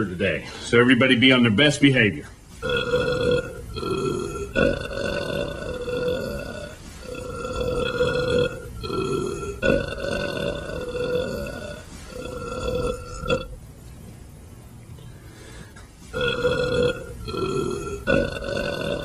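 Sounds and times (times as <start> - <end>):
man belching: 2.6 - 13.6, 16.1 - 19.0.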